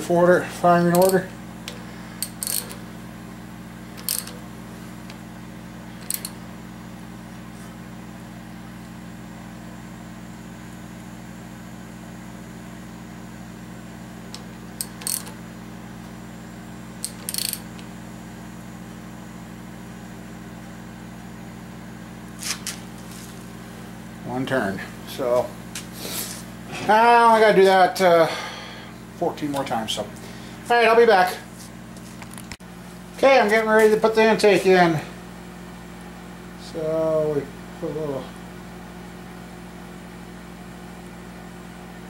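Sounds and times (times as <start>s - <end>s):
steady low hum: 0.0s - 42.0s
ratchet wrench clicking: 0.9s - 1.2s, 2.2s - 2.8s, 4.0s - 4.4s, 6.0s - 6.4s, 14.3s - 15.4s, 17.0s - 17.8s.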